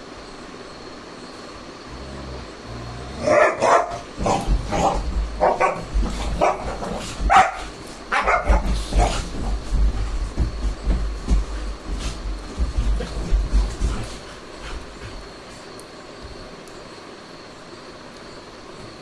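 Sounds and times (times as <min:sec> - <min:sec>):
dog barking: 0:03.2 - 0:09.2.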